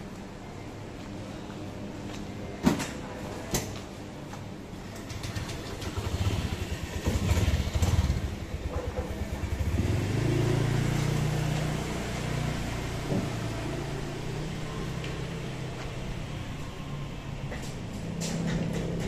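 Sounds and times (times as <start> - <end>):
motorbike engine running: 5.1 - 15.5.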